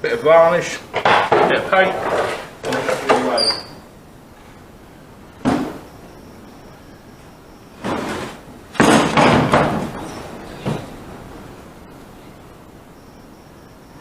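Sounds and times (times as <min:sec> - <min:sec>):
wooden panels knocking: 0:00.9 - 0:03.4, 0:07.8 - 0:11.0
rough shuffle: 0:07.8 - 0:08.4.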